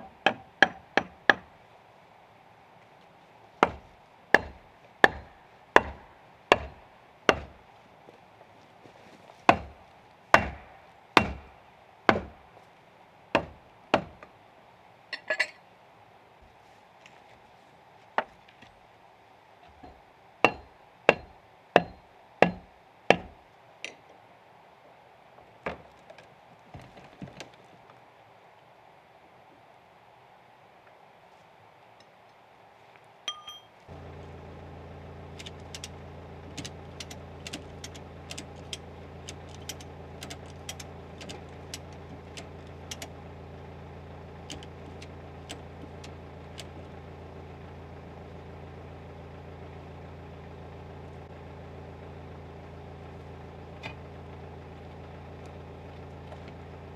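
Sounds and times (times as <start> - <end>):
axe chopping log: 0.0 - 1.5, 3.6 - 7.6, 9.4 - 12.4, 13.4 - 14.3, 19.8 - 23.4.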